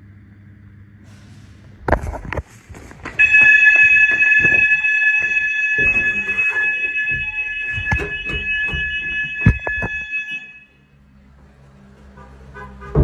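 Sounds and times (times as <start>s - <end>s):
knocks and thumps: 1.1s - 10.1s
fire alarm high-pitched tone: 3.2s - 10.8s.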